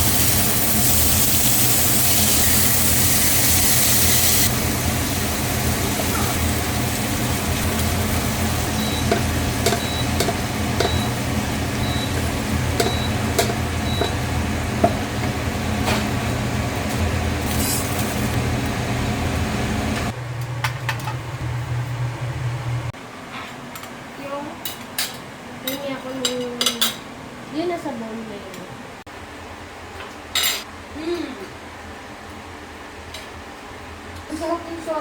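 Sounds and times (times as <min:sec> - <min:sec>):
food sizzling in a pan: 0:00.0 - 0:20.1.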